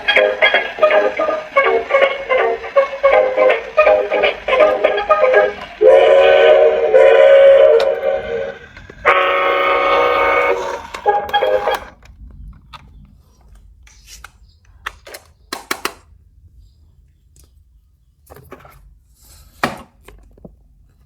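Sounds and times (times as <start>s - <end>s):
toy train horn blasts: 0.0s - 11.9s.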